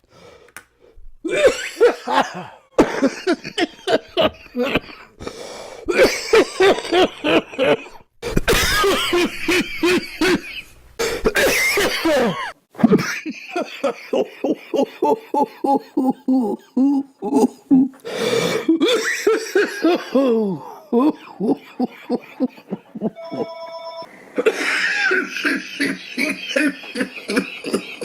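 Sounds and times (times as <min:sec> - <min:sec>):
person coughing: 0:01.3 - 0:05.3, 0:05.9 - 0:14.2, 0:15.6 - 0:23.5, 0:24.4 - 0:28.0.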